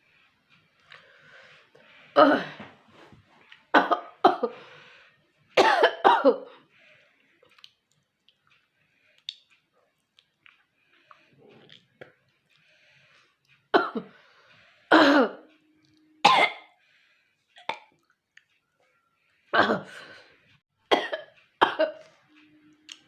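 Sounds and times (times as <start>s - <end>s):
woman coughing and hawking: 3.7s - 4.6s, 5.6s - 6.5s, 13.8s - 14.1s, 14.9s - 15.4s, 16.2s - 16.7s, 19.6s - 20.0s, 20.9s - 22.0s.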